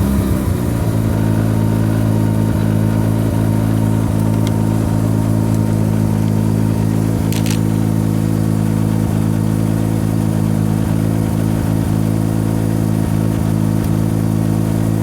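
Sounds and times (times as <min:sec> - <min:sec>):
rotary engine idling: 0:00.0 - 0:15.0.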